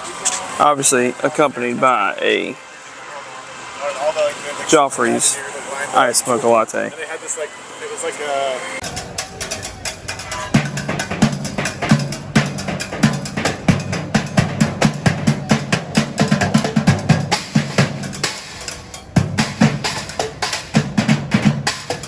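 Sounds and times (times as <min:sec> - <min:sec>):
drum kit beat: 0:08.8 - 0:22.0.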